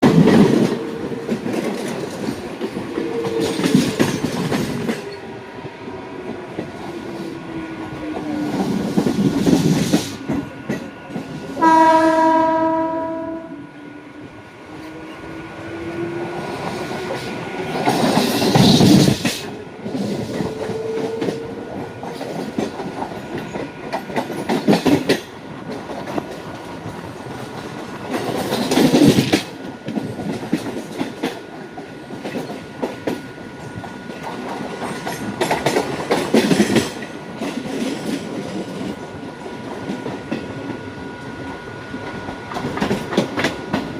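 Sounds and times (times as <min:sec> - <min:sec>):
train wheels clattering over rails: 0:00.0 - 0:12.2, 0:14.7 - 0:40.9, 0:41.9 - 0:43.9
train horn blast: 0:11.6 - 0:13.9.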